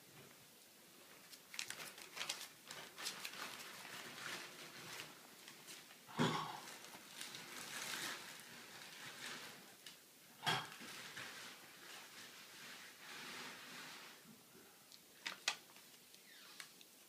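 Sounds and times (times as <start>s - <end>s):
puppies rustling and scuffling: 1.0s - 10.0s, 10.7s - 14.3s.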